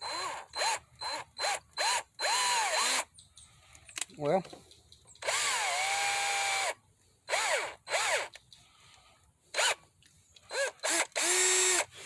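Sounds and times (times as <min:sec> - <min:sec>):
power drill motor whirring: 0:00.0 - 0:03.1, 0:05.2 - 0:08.4, 0:09.5 - 0:09.8, 0:10.4 - 0:12.0.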